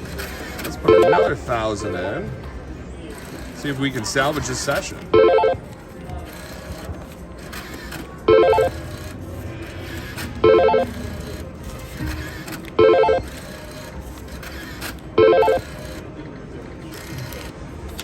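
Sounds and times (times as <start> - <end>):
casino floor din: 0.8 - 1.5
slot machine warbling chime: 5.2 - 5.6, 12.8 - 13.2, 15.2 - 15.6.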